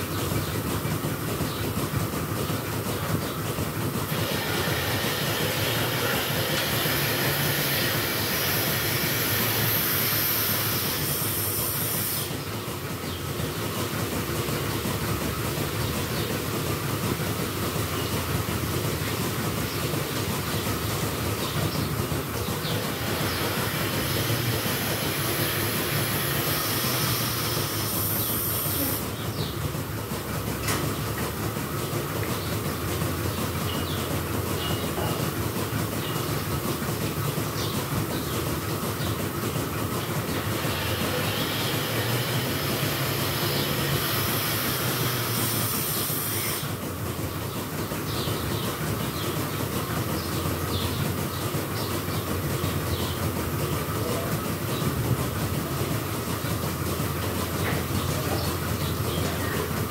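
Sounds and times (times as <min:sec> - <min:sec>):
milking machinery clatter: 0:00.0 - 0:59.9
strong hiss: 0:04.1 - 0:12.6, 0:22.7 - 0:29.2, 0:40.3 - 0:46.8.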